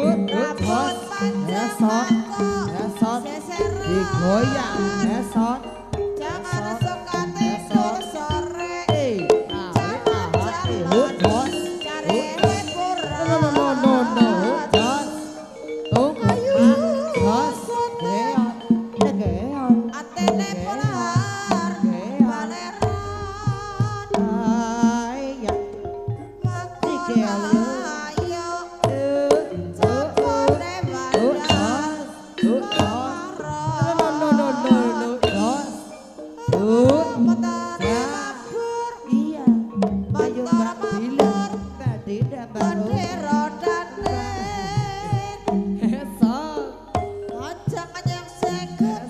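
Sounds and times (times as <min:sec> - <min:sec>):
hand drum strokes: 0:00.0 - 0:49.0
person singing wavering vocal: 0:00.0 - 0:49.0
sustained gamelan tones: 0:00.0 - 0:49.0.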